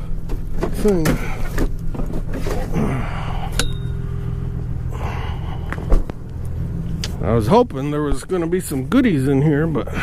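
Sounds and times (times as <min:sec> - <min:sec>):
vehicle engine idling: 0:00.0 - 0:10.0
sharp ringing click: 0:03.6 - 0:04.0.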